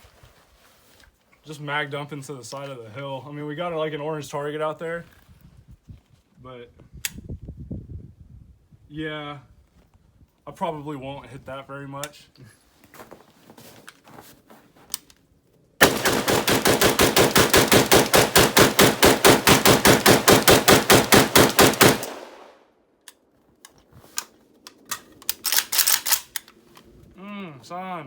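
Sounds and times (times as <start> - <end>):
rifle shots fired rapidly: 15.8 - 22.6.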